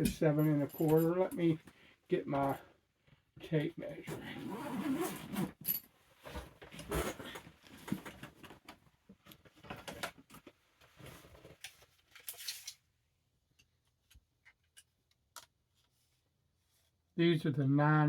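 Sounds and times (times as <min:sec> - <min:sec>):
rummaging and rustling: 0:04.2 - 0:12.8.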